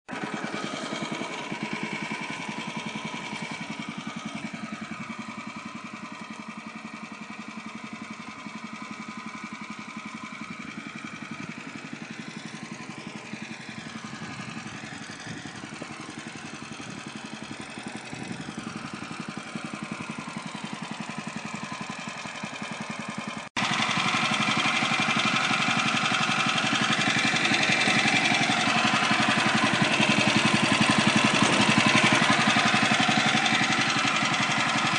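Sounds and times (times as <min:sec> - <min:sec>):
bandsaw sawmill cutting wood: 0:00.1 - 0:03.6, 0:12.2 - 0:19.9, 0:23.5 - 0:34.9.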